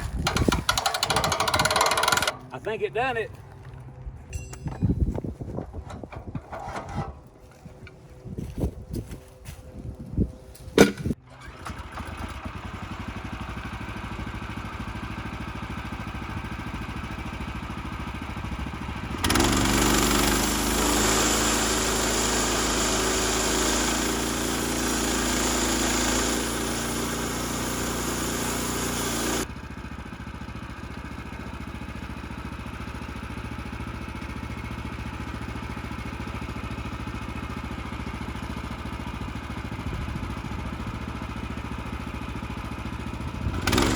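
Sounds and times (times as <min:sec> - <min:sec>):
engine running: 0:00.0 - 0:43.9
engine knock: 0:00.2 - 0:02.4.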